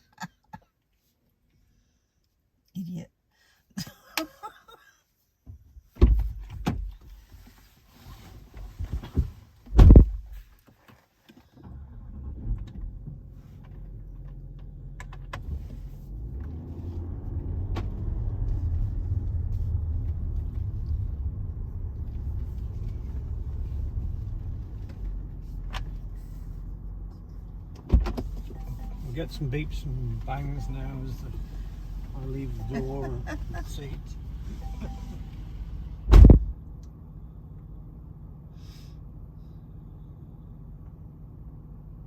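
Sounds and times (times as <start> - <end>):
knocks and thumps in car: 5.4 - 7.3, 8.6 - 10.4
car engine rumbling: 11.5 - 42.0.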